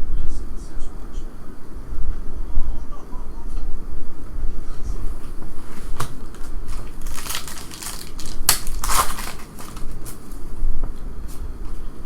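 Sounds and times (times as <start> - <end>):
wrappers crinkling and tearing: 5.7 - 10.4.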